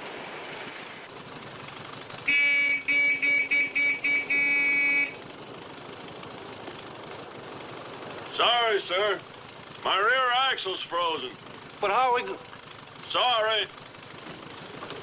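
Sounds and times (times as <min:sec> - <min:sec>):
car horn honking: 0:02.2 - 0:05.2.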